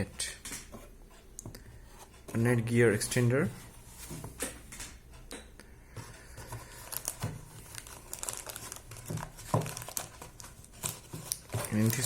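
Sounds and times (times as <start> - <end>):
packaging crinkling and rustling: 6.5 - 12.0.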